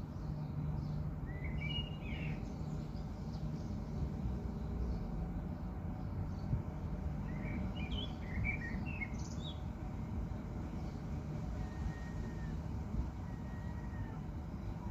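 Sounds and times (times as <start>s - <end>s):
birds chirping: 0.0s - 9.7s
low outdoor rumble: 0.0s - 14.9s.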